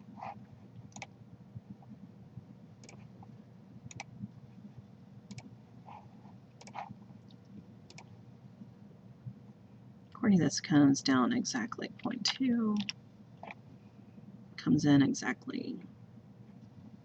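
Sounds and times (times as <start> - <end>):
faint steady hum: 0.0 - 17.0
computer mouse clicking: 0.9 - 1.1, 2.8 - 3.1, 3.9 - 4.1, 5.3 - 5.5, 6.6 - 8.1.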